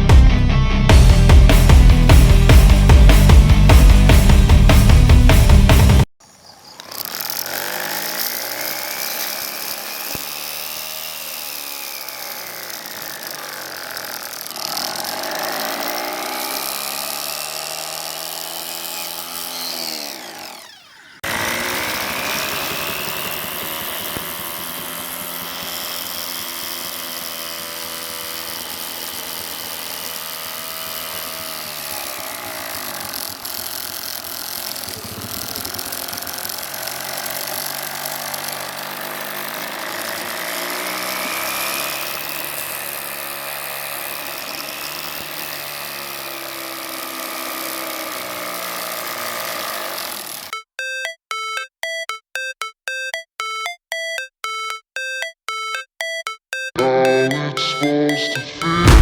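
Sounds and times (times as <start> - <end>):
small electric motor whining: 6.2 - 50.6.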